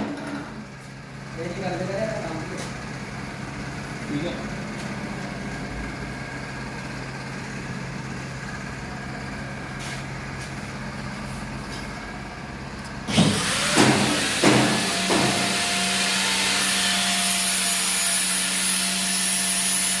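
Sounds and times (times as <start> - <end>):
machine hum: 0.0 - 20.0
welding arc crackling and hissing: 13.2 - 20.0.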